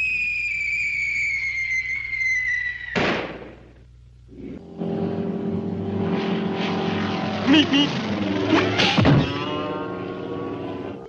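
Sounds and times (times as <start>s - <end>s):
falling whistle: 0.0s - 3.0s
steady buzzing hum: 0.0s - 11.0s.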